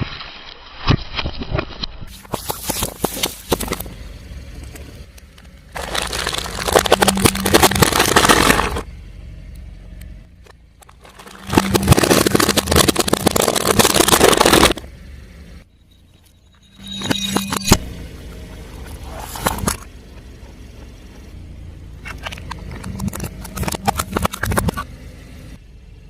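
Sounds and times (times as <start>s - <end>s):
car running low: 3.4s - 16.5s, 17.7s - 26.0s
tyre crunching objects: 4.7s - 8.9s, 10.8s - 14.8s.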